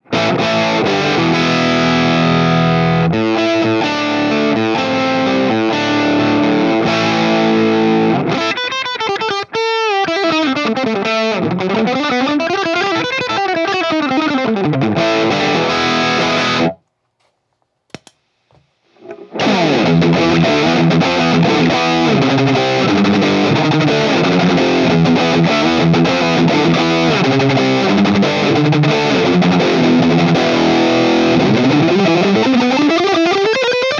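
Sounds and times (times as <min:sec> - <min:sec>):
distorted electric guitar riffs: 0:00.0 - 0:16.8, 0:19.0 - 0:33.9
guitar pitch glides: 0:19.1 - 0:33.9.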